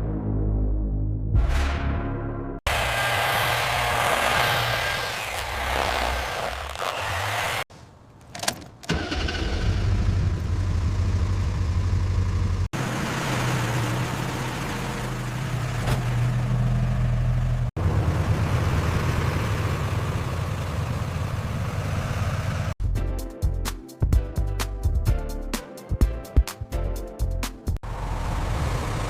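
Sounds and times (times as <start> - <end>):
car engine starting and running: 8.2 - 22.8, 27.8 - 29.0.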